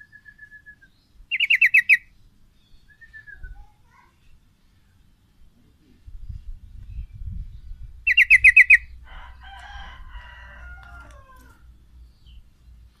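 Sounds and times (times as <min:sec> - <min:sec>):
bird chattering and warbling: 0:01.3 - 0:05.0, 0:05.6 - 0:09.6.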